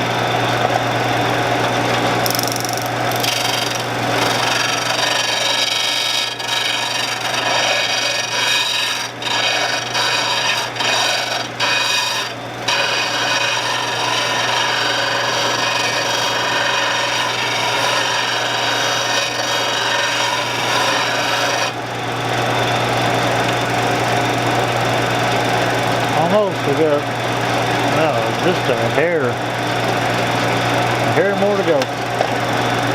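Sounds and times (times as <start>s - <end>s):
grinder motor hum: 0.0s - 32.9s
steel grinding rasp: 2.3s - 21.8s.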